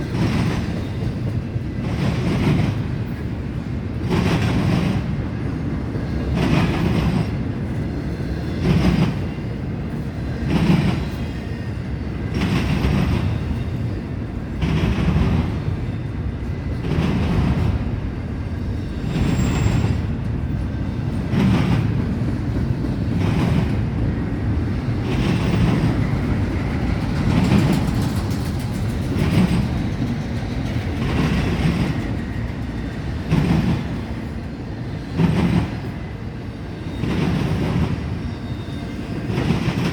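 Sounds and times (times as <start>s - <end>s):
freight train rumbling past: 0.0s - 39.9s
wheels clacking over rail joints: 19.0s - 34.5s.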